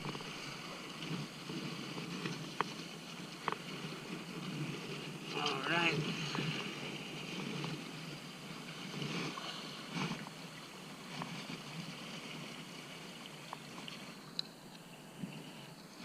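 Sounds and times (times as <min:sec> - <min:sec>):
water lapping: 0:00.0 - 0:16.0
wind: 0:00.0 - 0:16.0
faint clicks: 0:13.2 - 0:15.4.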